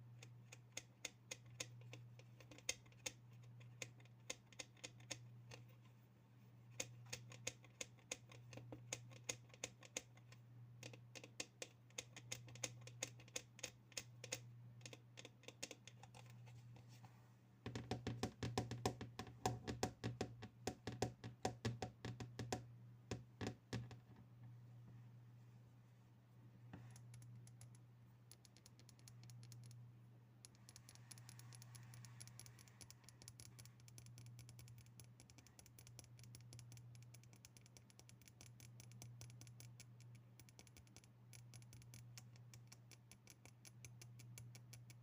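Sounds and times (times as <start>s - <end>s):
fingers tapping on objects: 17.7s - 24.0s.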